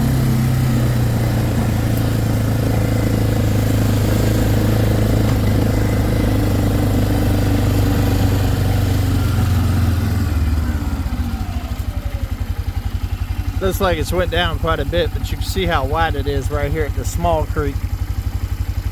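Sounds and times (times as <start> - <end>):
vehicle engine running: 0.0 - 18.9.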